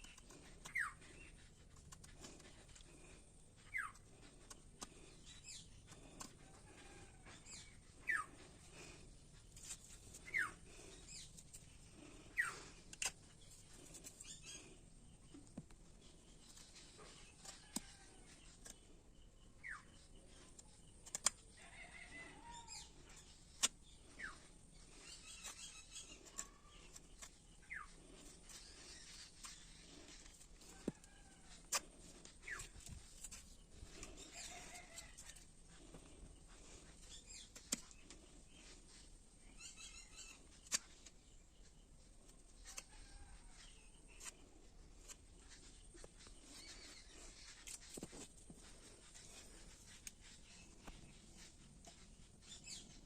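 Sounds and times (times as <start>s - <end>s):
faint sweeping bird chirps: 5.0s - 9.2s, 32.2s - 35.4s, 36.2s - 42.0s.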